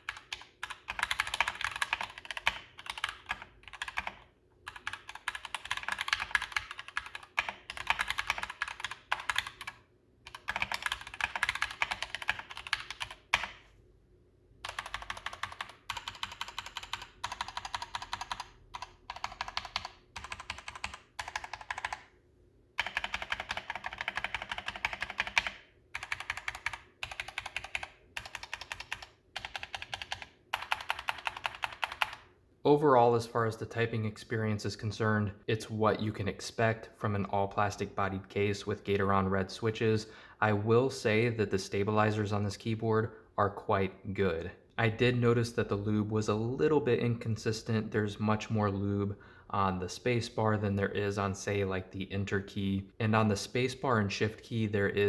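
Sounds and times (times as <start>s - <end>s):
mechanical keyboard typing: 0.0s - 13.6s, 14.6s - 22.1s, 22.8s - 32.2s.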